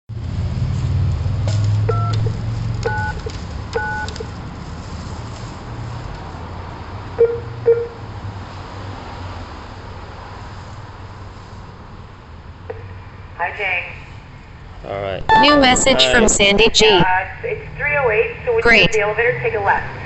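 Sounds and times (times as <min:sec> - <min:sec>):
keypad two-note dialing tones: 0:02.9 - 0:04.2, 0:07.2 - 0:08.0, 0:15.3 - 0:16.0
short low beeps: 0:07.2 - 0:08.0, 0:15.3 - 0:16.1.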